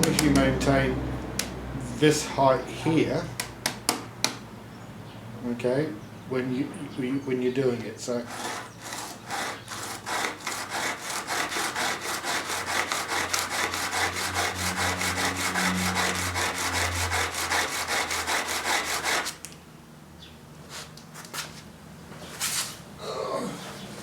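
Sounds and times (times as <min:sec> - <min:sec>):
chisel grinding on sharpening stone: 0:08.3 - 0:19.4.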